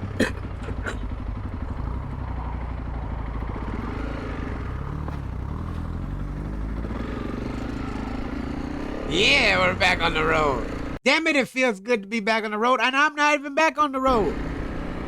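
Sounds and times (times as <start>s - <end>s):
motorcycle engine running: 0.0s - 11.0s, 14.1s - 15.0s.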